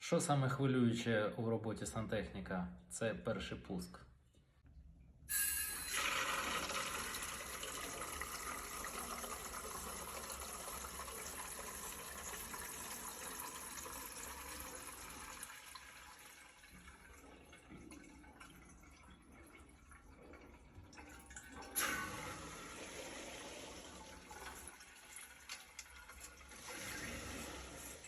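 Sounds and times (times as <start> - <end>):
water rushing through pipes: 5.3 - 28.0.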